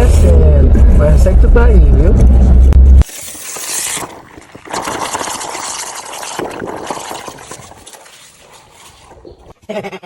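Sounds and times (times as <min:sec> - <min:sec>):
water leaking from a pipe: 0:03.0 - 0:09.6.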